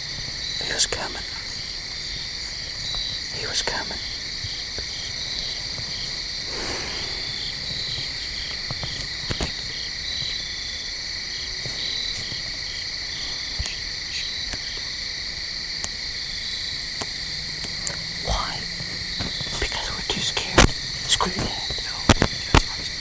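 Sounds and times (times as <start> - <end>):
crickets and insects trilling: 0.0 - 23.0
pulsed insect call: 0.0 - 23.0
faint ticks: 11.4 - 15.0, 15.8 - 23.0.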